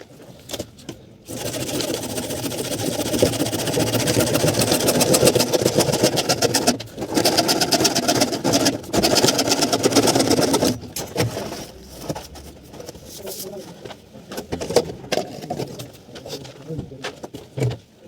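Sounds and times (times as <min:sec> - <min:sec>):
electric motor chattering: 0:01.3 - 0:10.8.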